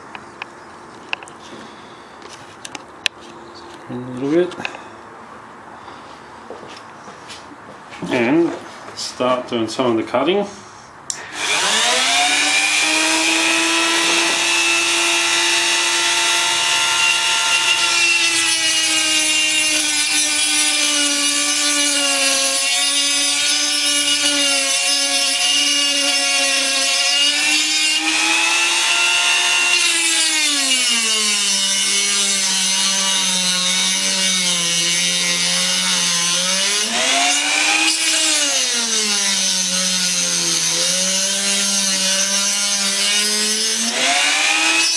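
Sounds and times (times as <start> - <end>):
rotary tool cutting metal: 11.1 - 44.9.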